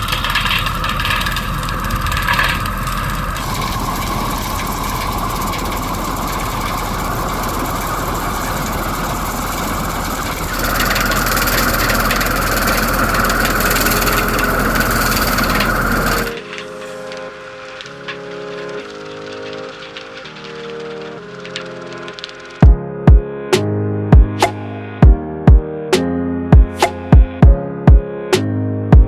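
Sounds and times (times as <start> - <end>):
hedge trimmer engine running: 0.0 - 17.2
music: 10.9 - 29.0.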